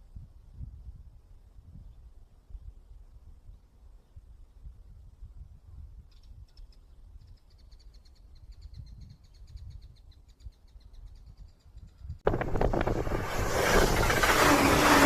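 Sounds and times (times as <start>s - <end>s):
wind and vehicle noise: 8.6s - 15.0s.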